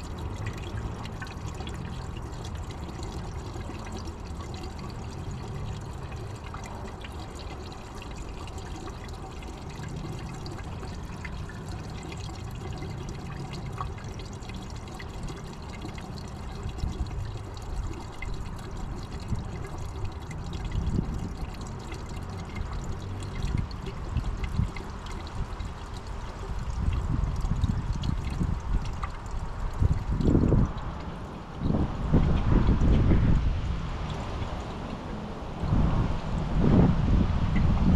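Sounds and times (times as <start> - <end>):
fuel pouring into tank: 0.0 - 36.9.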